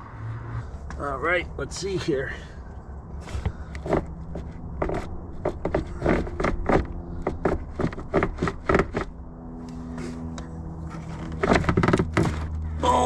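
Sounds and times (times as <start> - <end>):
steady low hum: 0.0 - 13.0
plastic parts knocking and scraping: 3.2 - 9.1, 10.9 - 12.6.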